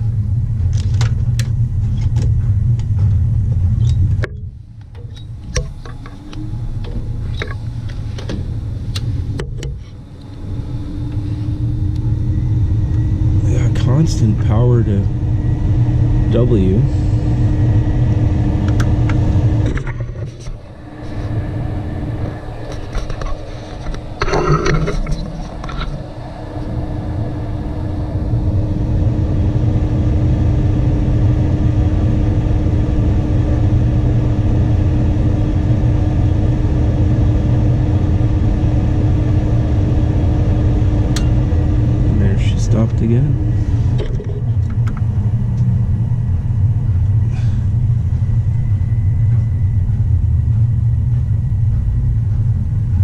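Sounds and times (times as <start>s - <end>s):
furnace humming: 0.0s - 53.0s.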